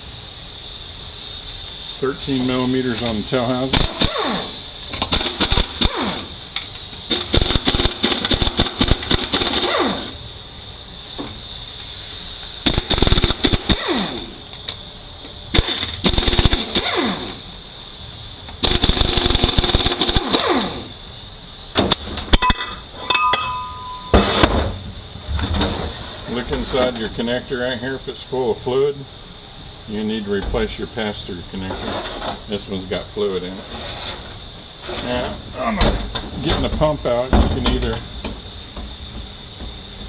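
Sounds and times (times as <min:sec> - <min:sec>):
ringing metal clinks: 0:22.4 - 0:24.2.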